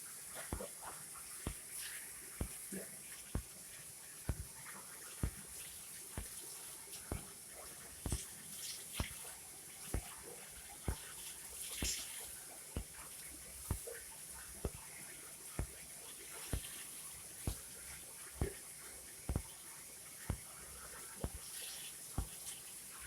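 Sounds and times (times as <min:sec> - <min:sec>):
faint steady hiss: 0:00.0 - 0:23.0
short sharp taps or drips: 0:00.5 - 0:03.6, 0:04.3 - 0:04.6, 0:05.2 - 0:07.3, 0:08.0 - 0:09.3, 0:09.9 - 0:15.0, 0:15.6 - 0:18.6, 0:19.3 - 0:19.6, 0:20.2 - 0:22.6.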